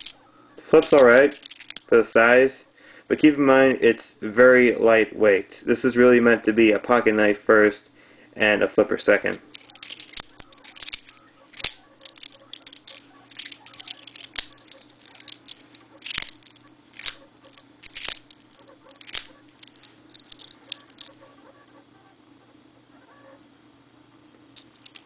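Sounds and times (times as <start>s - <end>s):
butterfly knife handles clacking: 9.2s - 21.2s.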